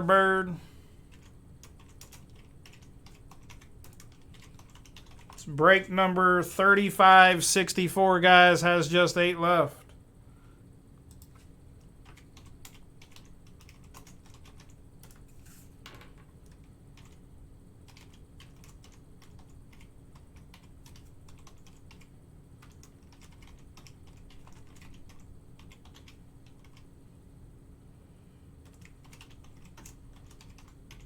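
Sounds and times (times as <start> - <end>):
low steady hum: 0.0 - 31.0
typing on computer keyboard: 1.1 - 5.4, 11.1 - 15.2, 16.4 - 17.2, 17.8 - 26.9, 28.6 - 31.0.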